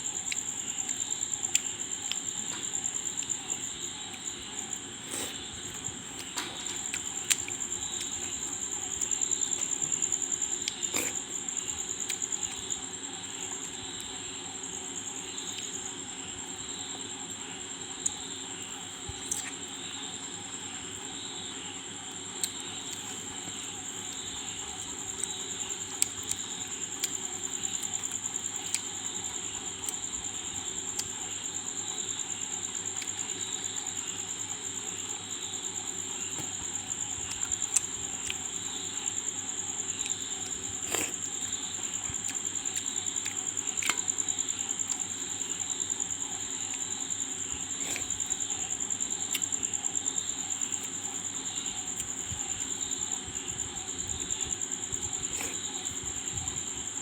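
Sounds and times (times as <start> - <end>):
chewing and mouth smacks: 0.2 - 3.5, 6.1 - 12.7, 24.7 - 29.2, 40.0 - 45.6, 47.6 - 48.7, 49.3 - 49.6, 55.0 - 56.0.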